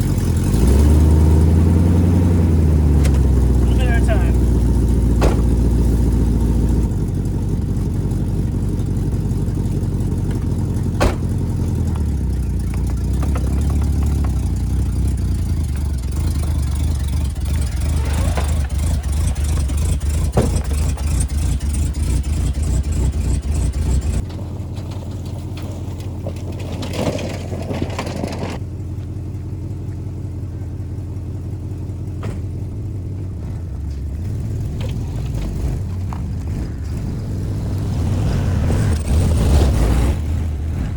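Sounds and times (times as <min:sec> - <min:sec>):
engine low rumble: 0:00.0 - 0:40.9
sharp knocks: 0:05.2 - 0:05.6, 0:11.0 - 0:11.4.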